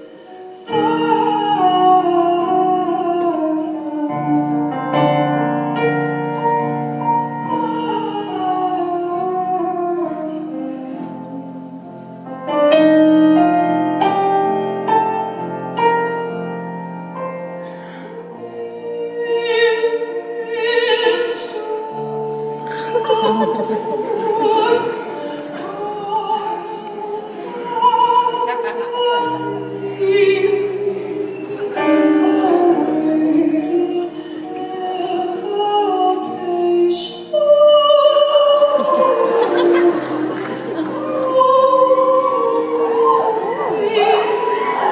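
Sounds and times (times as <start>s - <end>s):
live instrumental band music: 38.8s - 41.4s.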